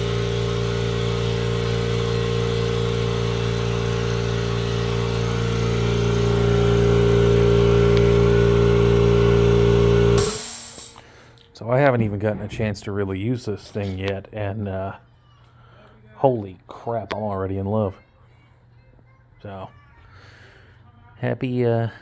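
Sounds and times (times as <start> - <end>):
air compressor humming: 0.0 - 11.0.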